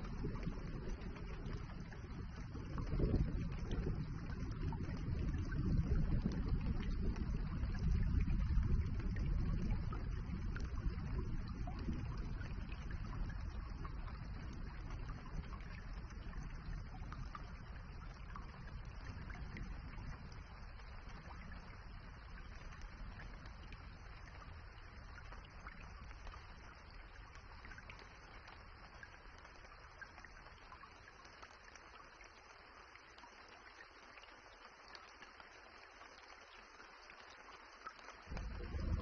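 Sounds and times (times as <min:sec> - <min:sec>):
steady rain hiss: 0:00.0 - 0:39.0
low rumble: 0:38.3 - 0:39.0.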